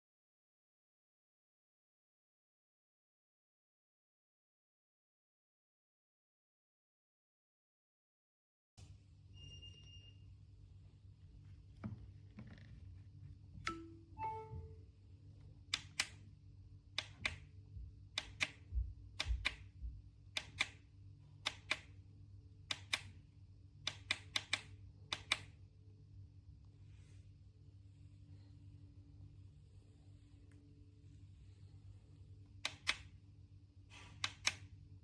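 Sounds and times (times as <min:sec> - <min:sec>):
button clicks: 0:13.6 - 0:14.7.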